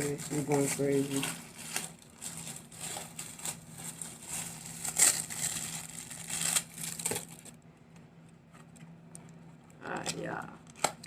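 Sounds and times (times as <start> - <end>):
gift packaging rustling: 0.0 - 7.6.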